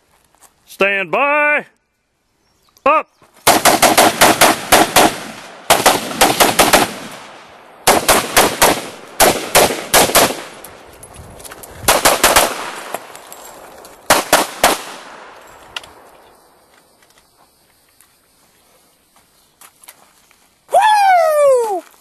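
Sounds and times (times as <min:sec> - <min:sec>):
gunshots: 0:03.4 - 0:10.6, 0:11.9 - 0:13.1, 0:14.1 - 0:15.4.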